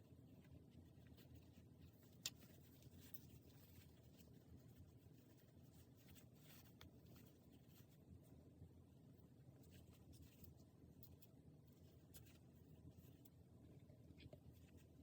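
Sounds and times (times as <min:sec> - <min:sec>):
soft handling ticks: 0:00.0 - 0:15.0.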